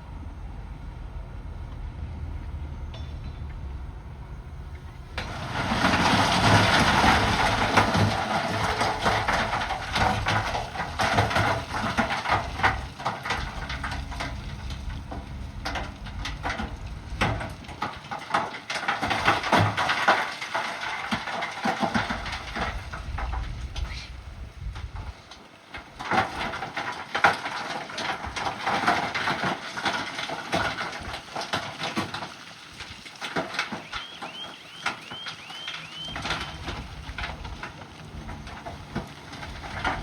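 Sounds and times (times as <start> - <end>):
diesel engine running: 0.0 - 18.6, 33.9 - 40.0
harsh grinding of rock: 4.8 - 40.0.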